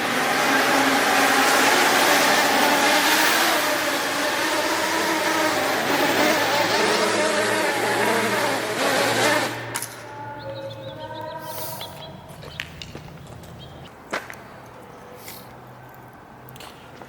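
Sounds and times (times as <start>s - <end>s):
quadcopter motors whining: 0.0s - 10.4s.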